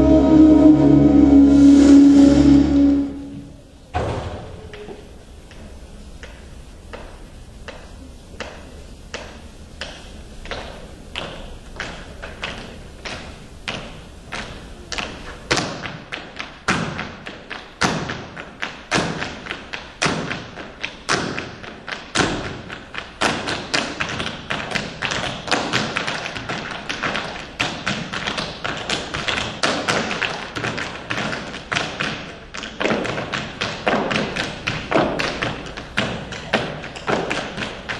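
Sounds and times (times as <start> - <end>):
percussive dance footwork on hard floor: 10.4 - 37.9.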